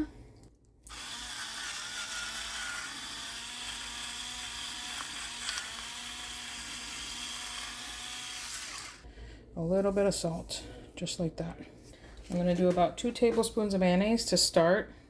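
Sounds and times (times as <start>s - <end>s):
electric pepper grinder whirring: 0.9s - 9.1s.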